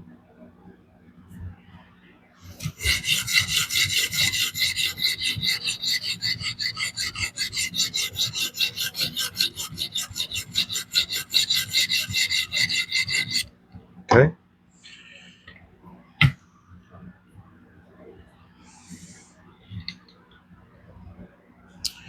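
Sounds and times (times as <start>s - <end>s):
sharpening plate scraping knife edge: 2.5s - 13.5s.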